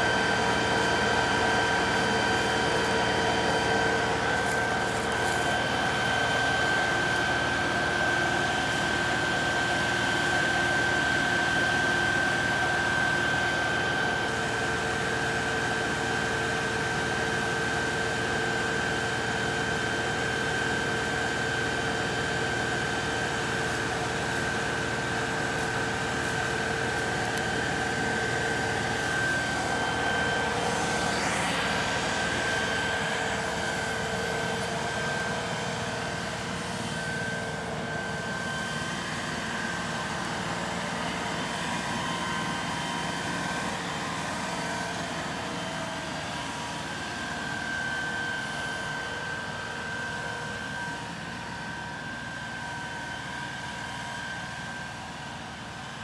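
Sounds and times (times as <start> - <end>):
tractor diesel engine running: 0.0 - 46.0
high whine: 22.0 - 36.6.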